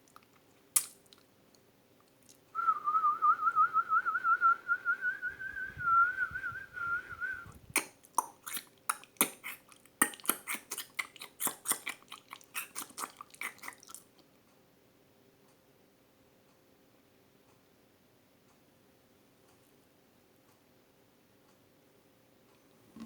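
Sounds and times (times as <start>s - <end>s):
tongue clicks and lip pops: 0.0s - 2.4s, 7.4s - 14.3s
person whistling a trill: 2.6s - 7.5s.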